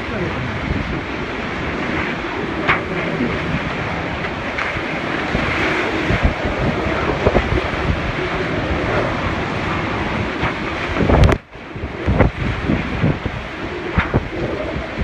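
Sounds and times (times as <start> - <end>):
strong wind gusting: 0.0 - 15.0.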